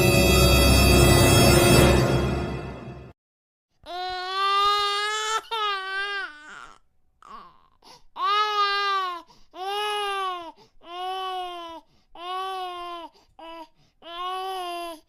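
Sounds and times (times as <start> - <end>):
baby crying: 3.8 - 15.0.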